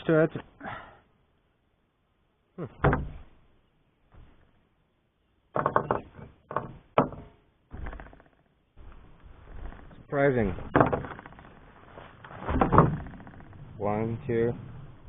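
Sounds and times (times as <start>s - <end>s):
knocks and clunks of armour plate: 2.8s - 3.4s, 5.5s - 8.9s, 9.5s - 13.8s.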